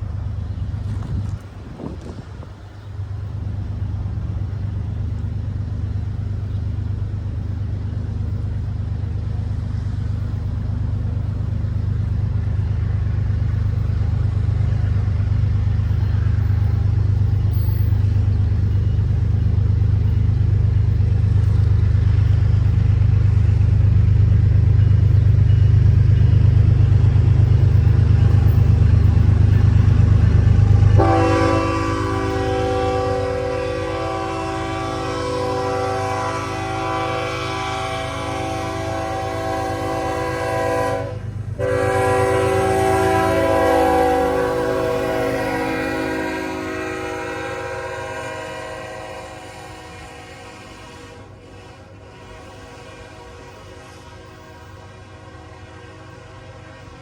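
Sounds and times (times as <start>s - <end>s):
diesel locomotive rumbling: 0.0s - 57.0s
train air horn: 30.6s - 57.0s.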